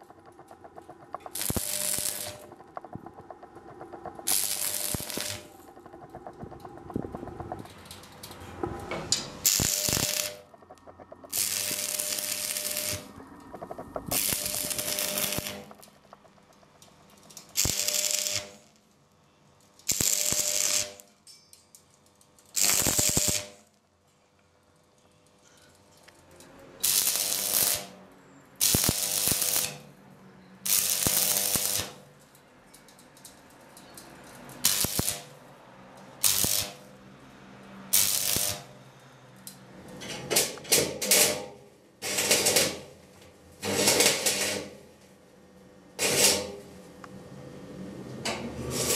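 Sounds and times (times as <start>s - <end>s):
steady hum: 0.0s - 19.5s
arc welding crackling hiss: 1.1s - 2.6s, 4.3s - 5.6s, 9.4s - 10.4s, 11.3s - 13.1s, 14.1s - 16.4s, 17.2s - 18.8s, 19.8s - 21.1s, 22.4s - 23.7s, 26.8s - 27.9s, 28.6s - 29.8s, 30.7s - 32.0s, 34.6s - 35.3s, 36.2s - 36.8s, 37.9s - 38.7s.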